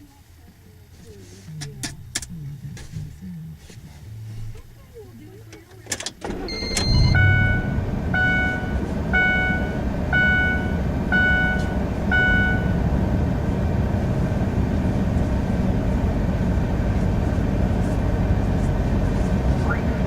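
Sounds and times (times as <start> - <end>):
vehicle engine idling: 0.1 - 20.0
car warning chime: 6.3 - 12.8.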